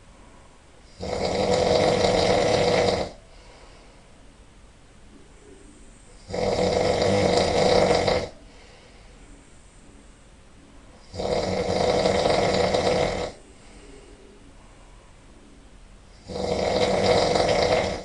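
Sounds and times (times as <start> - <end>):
quiet breathing: 0.0 - 18.0
person snoring loudly: 0.9 - 3.2, 6.2 - 8.4, 11.0 - 13.4, 16.2 - 18.0.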